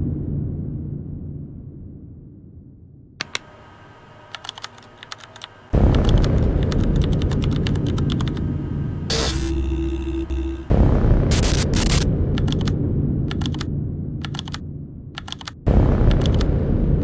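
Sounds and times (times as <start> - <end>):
noisy rumble: 0.0 - 17.0
rapid clicks: 3.2 - 3.5, 4.3 - 8.5, 11.3 - 14.6, 15.2 - 16.7.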